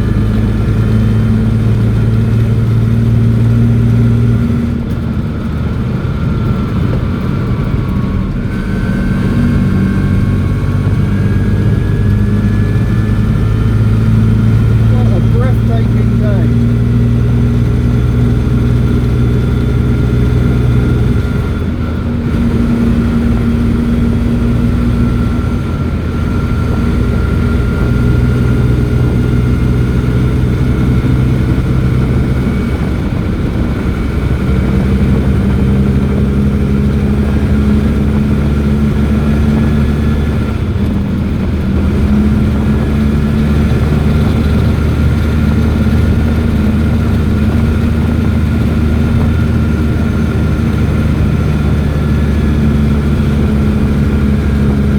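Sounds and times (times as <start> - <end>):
small car engine droning: 0.0 - 54.9.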